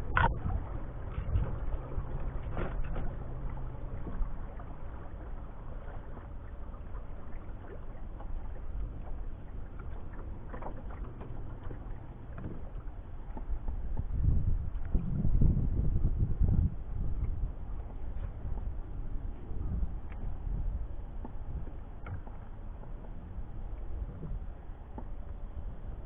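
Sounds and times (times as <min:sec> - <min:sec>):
faint low motor hum: 0:00.0 - 0:26.0
water washing against boat hull: 0:00.0 - 0:26.0
light knocks on boat: 0:10.4 - 0:14.2.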